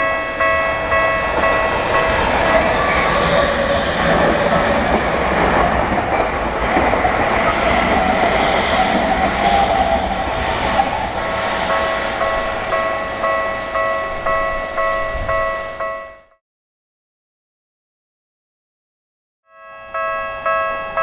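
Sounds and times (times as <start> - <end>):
electric train passing: 0.0 - 16.3
crossing warning bell: 0.0 - 16.4, 19.5 - 21.0.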